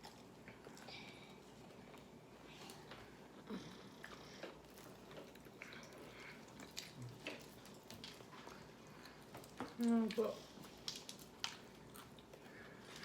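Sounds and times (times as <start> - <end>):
people chewing and eating: 0.0 - 13.0
small mouth clicks and smacks: 4.0 - 13.0.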